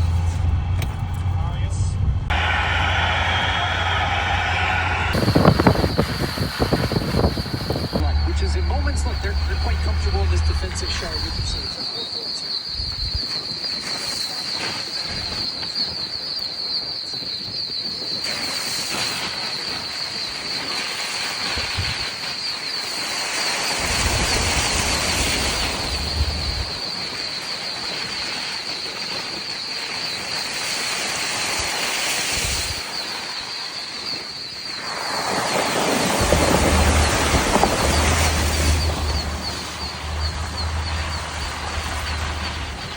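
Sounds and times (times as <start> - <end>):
wind buffeting microphone: 2.0 - 14.2, 21.4 - 22.2, 23.8 - 29.6, 34.0 - 42.9
noisy hiss: 2.3 - 11.6
frogs trilling: 2.3 - 42.9.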